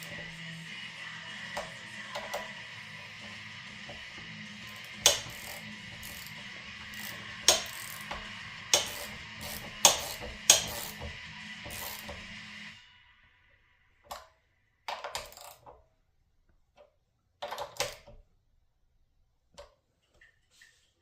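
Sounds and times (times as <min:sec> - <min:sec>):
background music: 0:00.0 - 0:14.3
tools clanking against bolts: 0:01.5 - 0:12.3.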